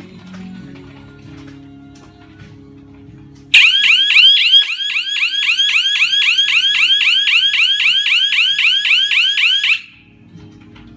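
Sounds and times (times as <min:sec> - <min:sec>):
alarm siren rising chirp: 0:03.6 - 0:10.0.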